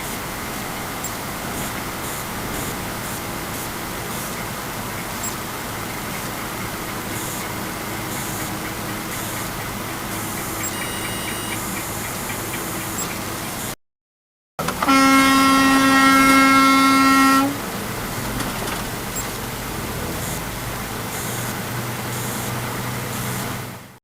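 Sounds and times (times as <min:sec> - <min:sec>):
road noise: 0:00.0 - 0:13.8, 0:14.6 - 0:24.0
car horn long blast: 0:10.6 - 0:11.6, 0:14.6 - 0:17.7.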